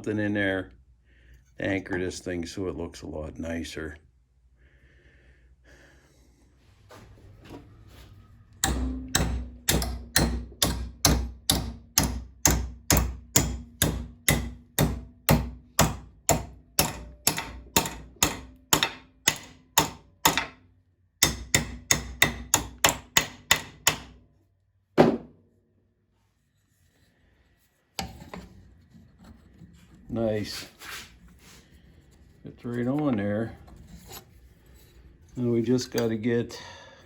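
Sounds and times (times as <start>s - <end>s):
hammer striking metal: 8.6s - 20.6s, 21.2s - 24.2s.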